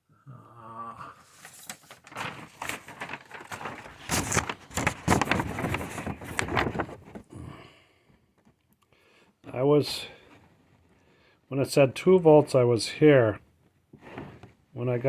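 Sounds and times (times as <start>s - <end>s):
rustling and crackling handling noise: 1.3s - 7.3s.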